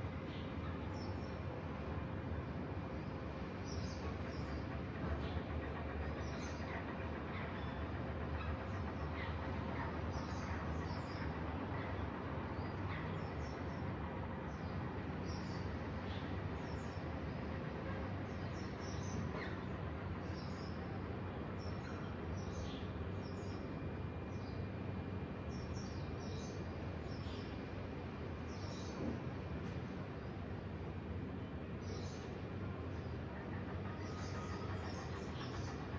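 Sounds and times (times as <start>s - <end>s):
low outdoor rumble: 0.0s - 35.9s
small birds chirping: 3.0s - 17.6s, 25.4s - 29.0s, 31.7s - 35.9s.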